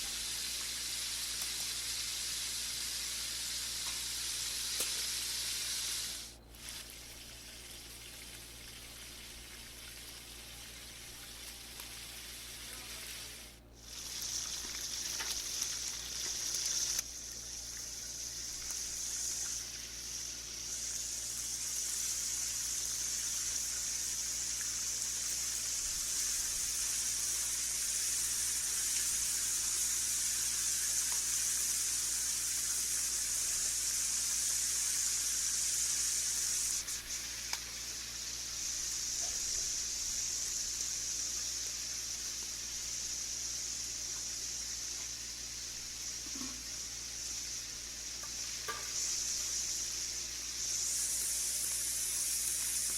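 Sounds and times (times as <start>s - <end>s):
chicken sizzling in hot fat: 0.0s - 52.9s.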